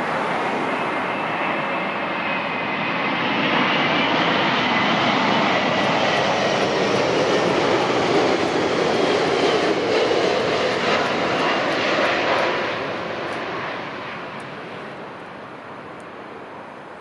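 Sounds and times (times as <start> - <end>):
jet airliner engines whining: 0.0 - 17.0.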